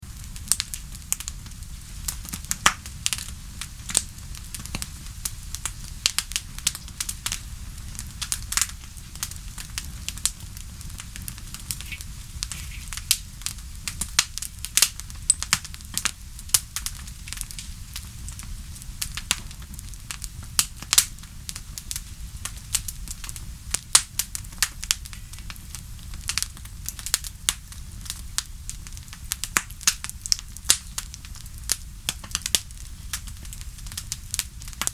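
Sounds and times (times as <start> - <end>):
wood fire crackling and popping: 0.0 - 34.9.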